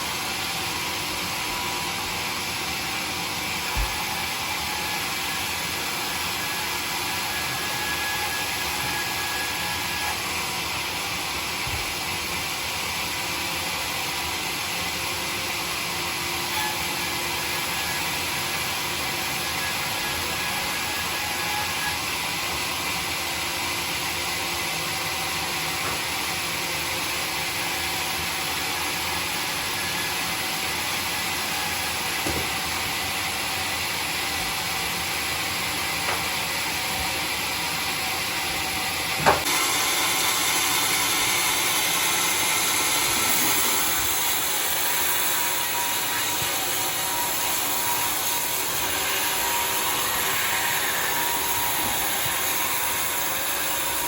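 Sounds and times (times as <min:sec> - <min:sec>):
sawmill hissing: 0:23.8 - 0:54.0.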